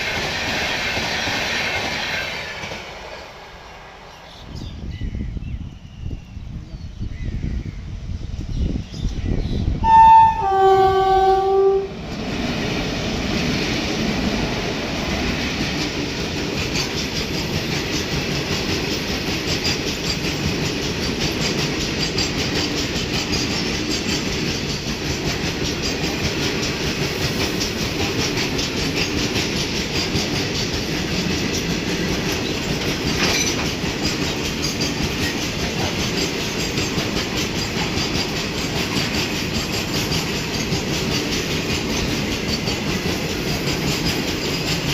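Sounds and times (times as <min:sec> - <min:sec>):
train wheels clattering: 0:00.0 - 0:03.6, 0:10.9 - 0:44.9
train horn: 0:09.8 - 0:12.0.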